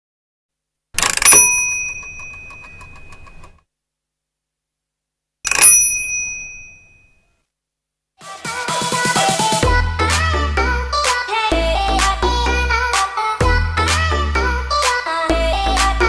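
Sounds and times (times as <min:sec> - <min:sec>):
meter lever clunk: 0:01.0 - 0:03.5
meter mechanism ticking: 0:01.0 - 0:03.5
meter bell ringing: 0:01.1 - 0:03.4, 0:05.5 - 0:07.2.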